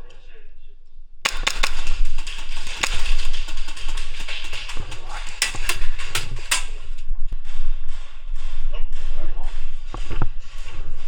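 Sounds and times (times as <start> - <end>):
sharp clicks: 1.3 - 7.1.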